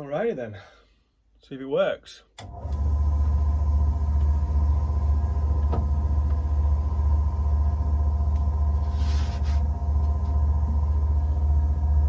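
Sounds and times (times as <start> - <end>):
drill press motor humming: 2.4 - 12.0.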